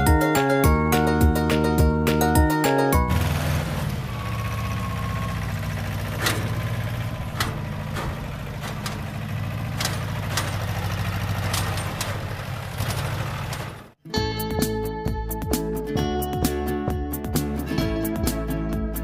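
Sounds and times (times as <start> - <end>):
engine idling: 3.0 - 14.0.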